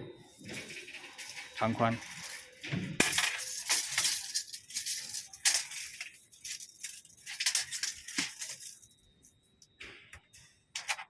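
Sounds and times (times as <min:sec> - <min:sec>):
tape measure rattling and scraping: 0:00.4 - 0:08.9.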